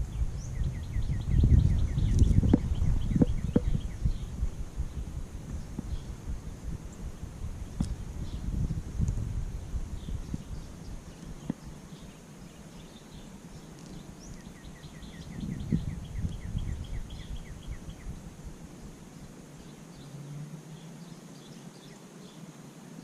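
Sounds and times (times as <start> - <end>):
bird chirping: 0.0 - 6.2, 9.9 - 18.2.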